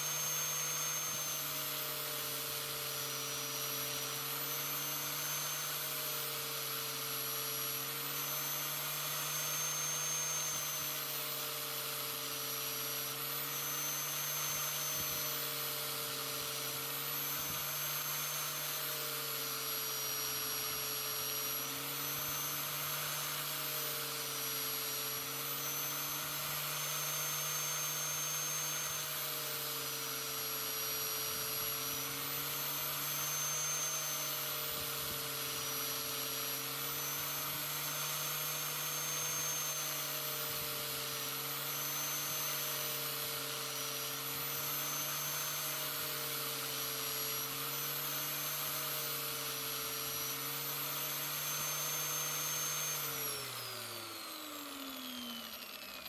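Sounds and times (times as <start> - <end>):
angle grinder grinding steel: 0.0 - 56.0.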